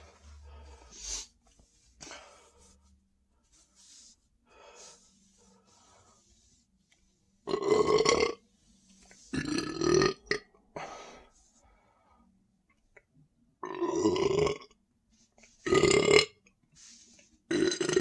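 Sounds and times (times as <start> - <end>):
person belching: 7.5 - 8.4, 9.4 - 10.4, 13.6 - 14.7, 15.7 - 16.4, 17.5 - 18.0.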